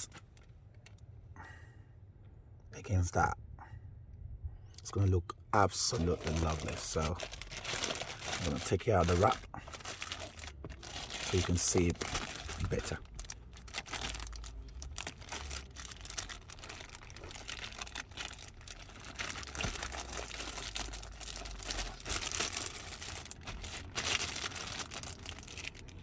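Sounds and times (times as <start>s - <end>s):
plastic wrapping crinkling and tearing: 5.8s - 26.0s.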